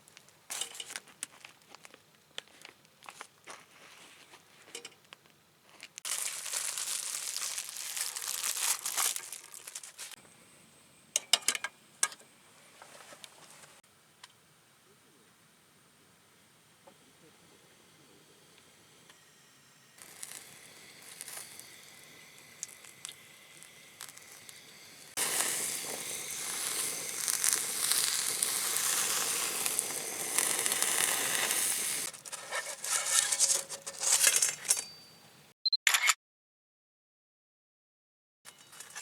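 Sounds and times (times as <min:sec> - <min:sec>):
crinkling crackly noises: 0:00.0 - 0:10.2, 0:20.0 - 0:34.8, 0:38.5 - 0:39.0
food sizzling in a frying pan: 0:06.1 - 0:10.1, 0:20.0 - 0:32.6.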